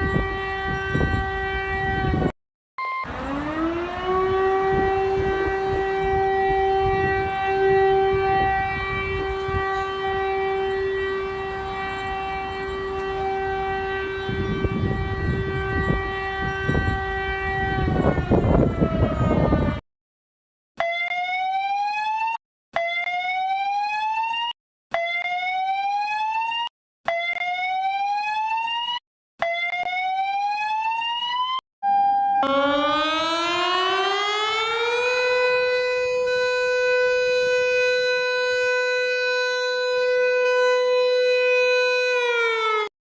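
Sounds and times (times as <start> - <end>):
electronic siren: 0.0 - 19.8, 20.8 - 42.9
short beep: 2.8 - 3.1.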